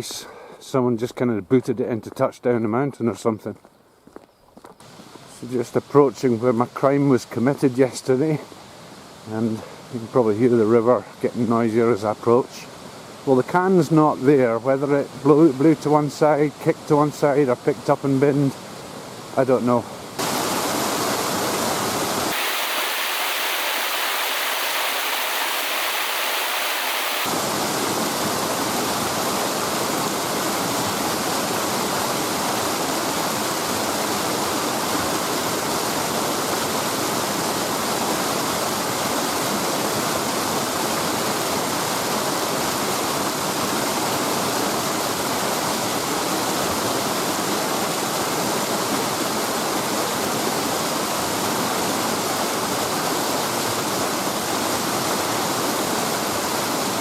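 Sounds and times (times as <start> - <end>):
mountain river rushing: 20.2 - 57.0.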